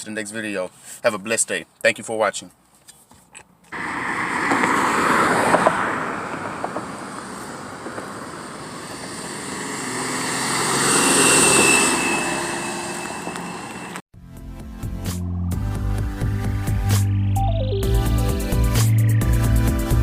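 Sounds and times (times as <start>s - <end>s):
engine noise: 3.8s - 14.0s
thin high whistling tone: 10.8s - 14.0s.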